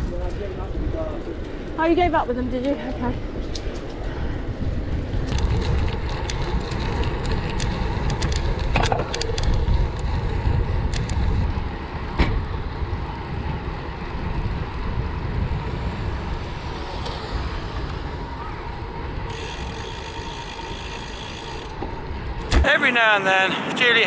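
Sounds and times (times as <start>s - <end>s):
tyres rolling on trail: 0.0s - 24.0s
bike clicks and rattles: 2.7s - 12.1s, 15.5s - 22.0s
wind rushing over camera: 3.1s - 20.1s.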